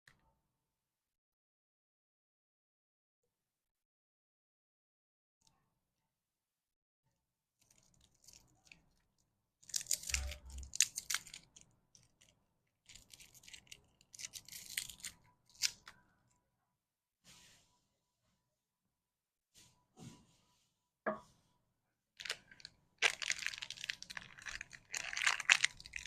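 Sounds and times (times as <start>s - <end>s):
plastic wrapper crinkling and tearing: 7.6s - 9.0s, 9.6s - 15.9s, 22.2s - 26.0s.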